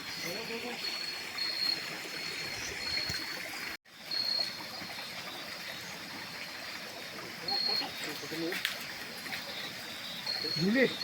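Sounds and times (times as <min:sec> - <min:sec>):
trickle of flowing water: 0:00.0 - 0:11.0.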